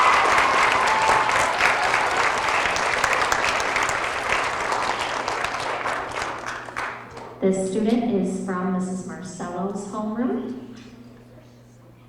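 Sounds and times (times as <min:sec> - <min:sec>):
children applauding: 0:00.0 - 0:07.4.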